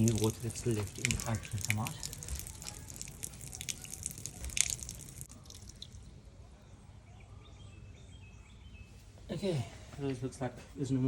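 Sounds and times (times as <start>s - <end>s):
water dripping and splashing from tap: 0.0s - 6.0s.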